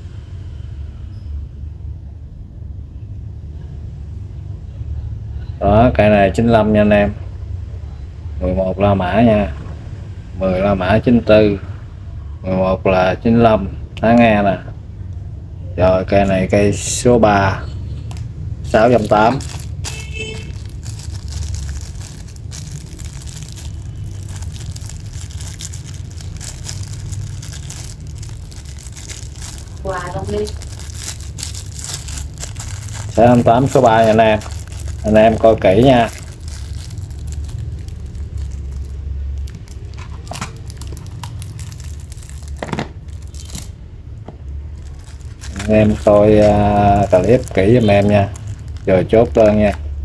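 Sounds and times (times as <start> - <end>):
steady low rumble: 14.7 - 50.0
packaging rustling and crinkling: 18.1 - 43.8, 44.7 - 49.8.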